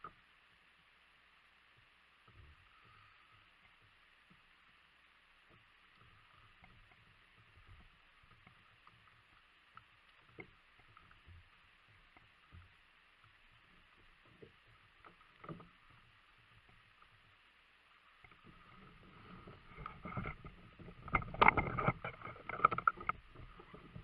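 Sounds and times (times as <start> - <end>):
water lapping around kayak: 0.0 - 24.0.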